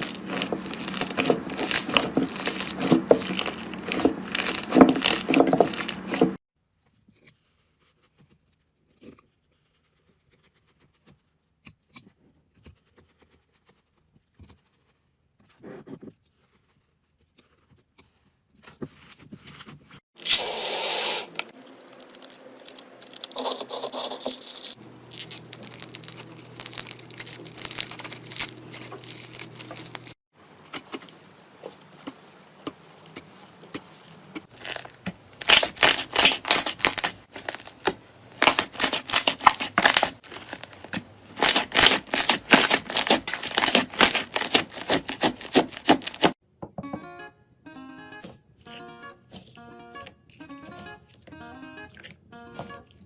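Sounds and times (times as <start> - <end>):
slime crackling and popping: 0.0 - 6.3, 25.1 - 31.0, 34.4 - 46.3.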